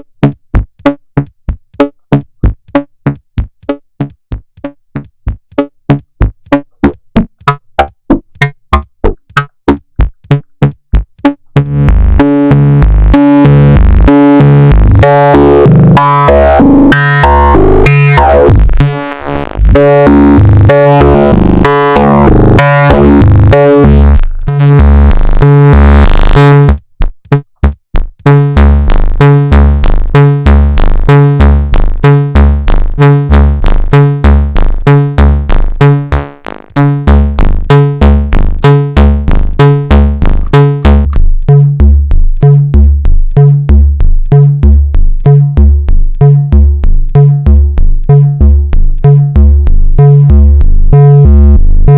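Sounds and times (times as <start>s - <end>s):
synthesizer arpeggio: 15.0s - 24.8s.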